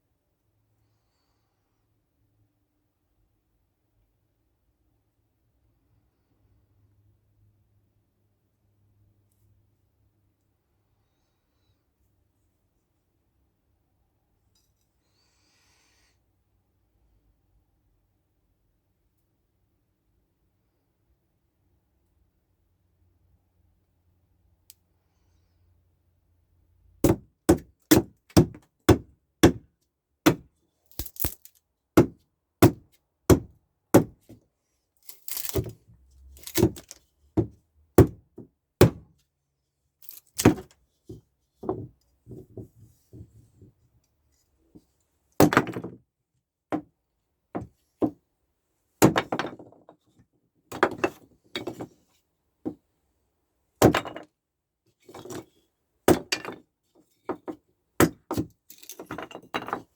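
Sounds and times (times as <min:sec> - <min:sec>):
billhook chopping wood: 0:27.0 - 0:31.4, 0:32.0 - 0:34.3, 0:36.4 - 0:38.2, 0:38.8 - 0:39.1, 0:40.4 - 0:40.7
wood splintering crack: 0:30.9 - 0:31.5.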